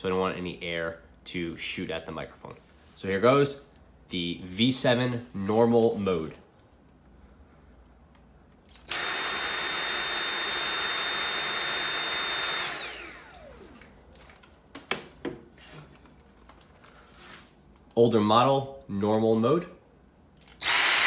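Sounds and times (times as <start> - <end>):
vacuum cleaner whining: 8.8 - 14.4.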